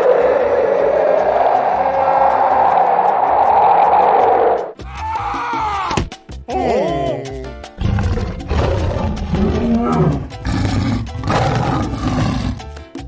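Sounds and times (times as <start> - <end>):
rough roaring sound effects: 0.0 - 4.7
background music: 0.0 - 13.0.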